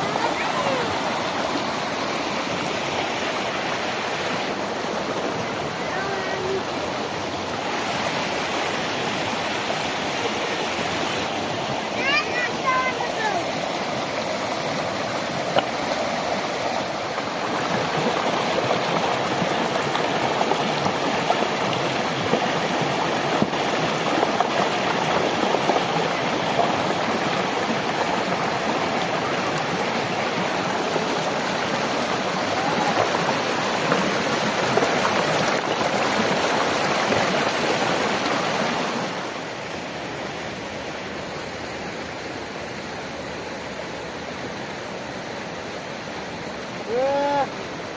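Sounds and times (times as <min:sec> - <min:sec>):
river water rushing: 0:00.0 - 0:47.9.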